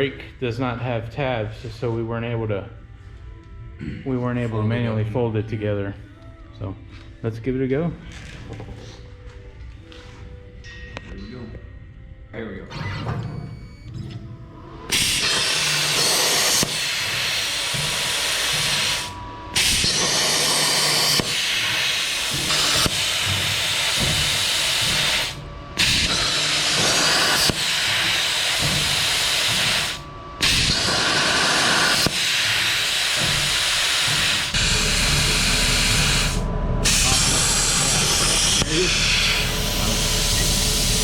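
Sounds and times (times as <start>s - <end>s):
plasma cutter hissing: 14.9s - 41.0s.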